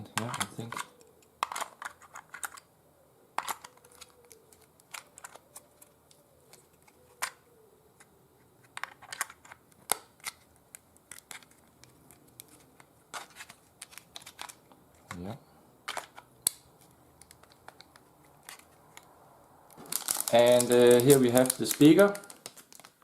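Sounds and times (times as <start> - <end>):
plastic parts clicking: 0.1 - 2.7, 3.4 - 19.1.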